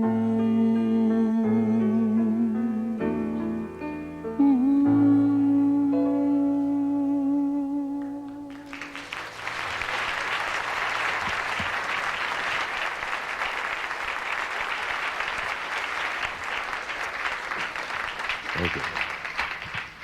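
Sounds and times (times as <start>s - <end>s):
audience applause: 8.5s - 20.0s.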